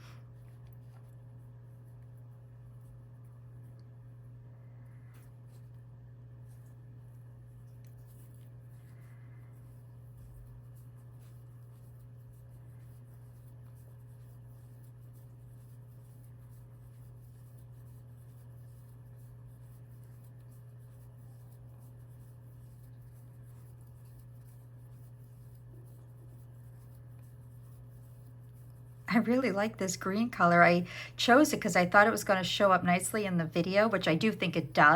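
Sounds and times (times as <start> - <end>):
yarn rubbing on crochet hook: 9.6 - 34.9.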